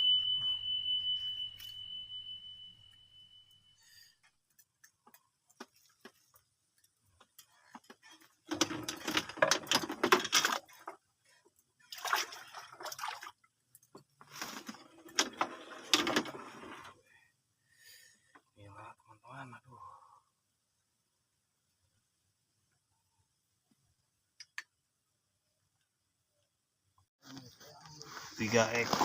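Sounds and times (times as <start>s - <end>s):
water splashing and sloshing: 8.5s - 11.0s, 11.8s - 14.0s.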